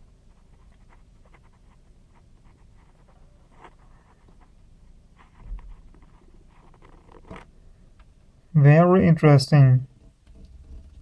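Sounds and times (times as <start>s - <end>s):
handling clicks and scratches: 5.2s - 7.5s.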